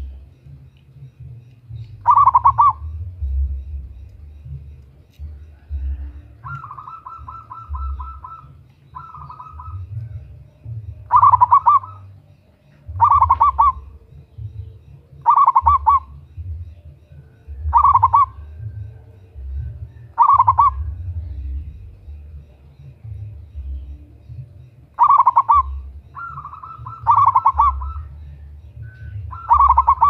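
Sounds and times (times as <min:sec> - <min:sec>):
dove cooing: 0:01.2 - 0:30.0
low rumble: 0:02.8 - 0:06.3.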